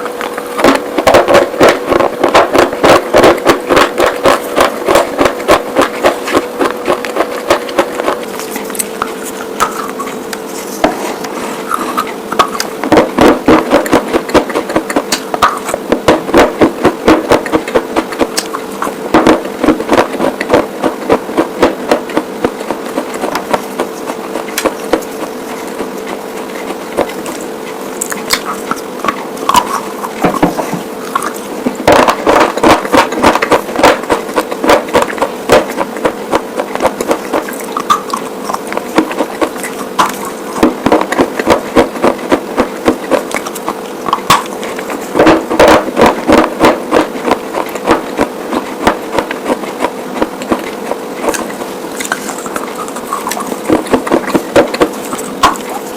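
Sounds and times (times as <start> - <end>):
faint hum: 0.0 - 55.9
slate being chewed and crunched: 0.0 - 55.9.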